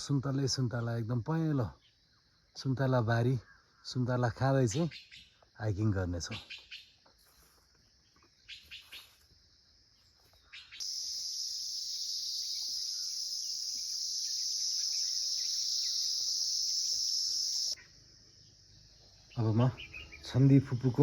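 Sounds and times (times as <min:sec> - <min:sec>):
faint bird chirps: 0:00.0 - 0:21.0
high-pitched insect drone: 0:10.2 - 0:21.0.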